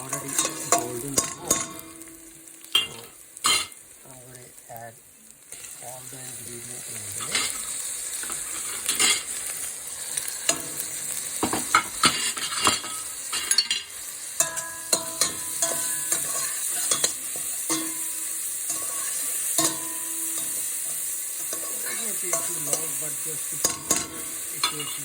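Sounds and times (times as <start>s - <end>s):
onions sizzling in hot oil: 0.0s - 25.0s
spoon scraping and knocking pot: 11.4s - 18.1s.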